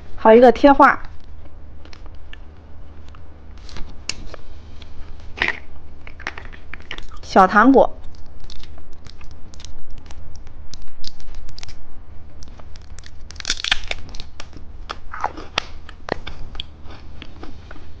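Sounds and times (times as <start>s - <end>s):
plastic packaging crinkling: 12.4s - 14.6s.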